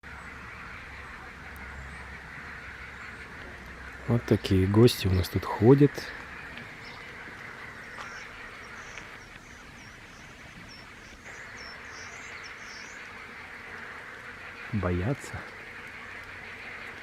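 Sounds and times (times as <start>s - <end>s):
steady outdoor hiss: 0.0s - 17.0s
high bird chirps: 6.6s - 13.4s.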